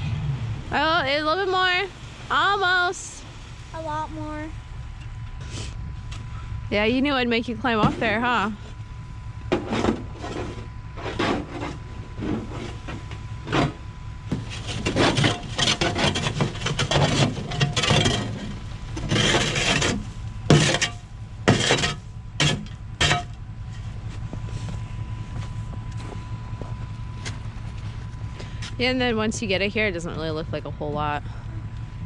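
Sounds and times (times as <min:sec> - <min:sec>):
truck engine idling: 0:00.0 - 0:32.0
wood chips scraped loose: 0:14.4 - 0:23.2
wood chips sliding and falling: 0:14.4 - 0:23.2.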